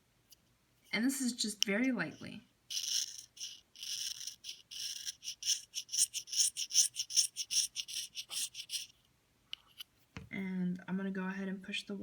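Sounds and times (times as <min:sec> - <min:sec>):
knife scraping reed cane: 0:02.7 - 0:08.9.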